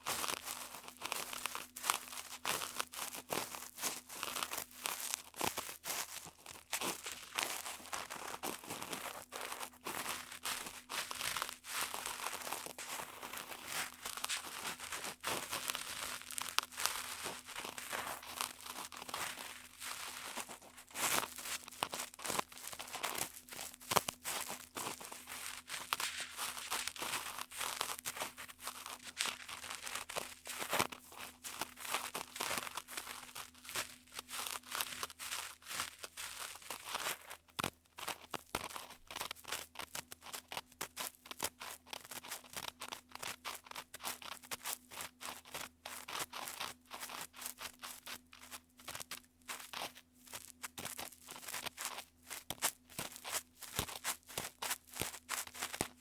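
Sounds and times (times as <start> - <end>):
faint steady hum: 0.0 - 39.0.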